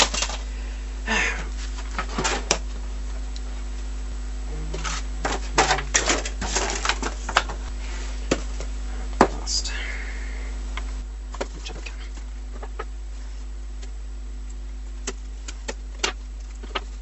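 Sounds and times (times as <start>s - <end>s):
packaging crinkling and rustling: 0.0s - 0.5s, 4.8s - 7.6s
steady low hum: 0.0s - 17.0s.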